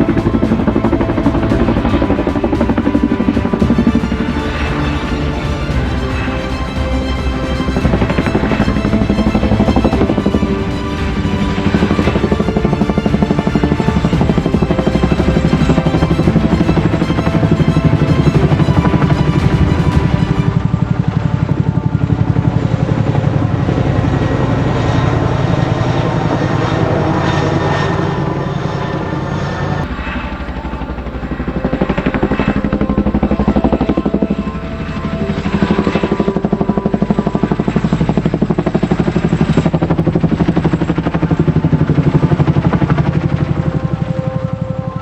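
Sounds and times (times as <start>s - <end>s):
helicopter rotor chop: 0.0s - 45.0s.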